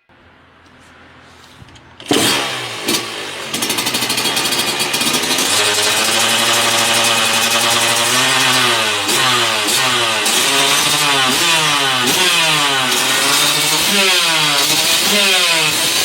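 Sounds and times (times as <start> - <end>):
two-stroke motorcycle engine revving: 2.0 - 16.0.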